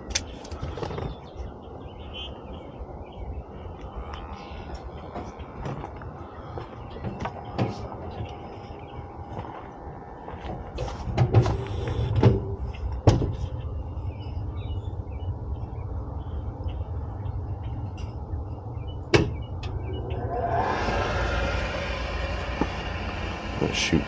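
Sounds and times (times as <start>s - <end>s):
steady low hum: 0.0s - 24.0s
furnace motor whine: 7.3s - 12.6s, 19.1s - 24.0s
rush of air: 19.7s - 24.0s.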